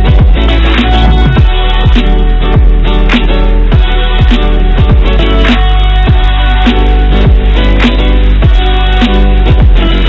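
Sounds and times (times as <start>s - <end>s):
bass drum hits: 0.0s - 0.5s, 1.1s - 2.0s, 2.6s - 2.8s, 3.7s - 5.2s, 7.3s - 7.5s, 9.5s - 9.8s.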